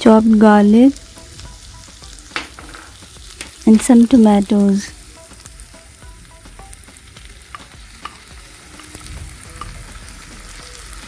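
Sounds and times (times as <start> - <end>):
vegetables sizzling in oil: 0.0 - 11.0
utensil clicking against pan: 2.3 - 3.9, 7.4 - 9.8.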